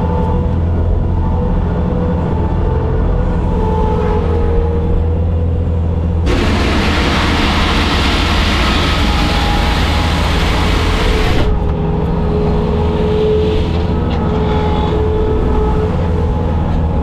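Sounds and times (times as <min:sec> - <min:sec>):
diesel engine running: 0:00.0 - 0:17.0
loud rushing noise: 0:06.2 - 0:11.7.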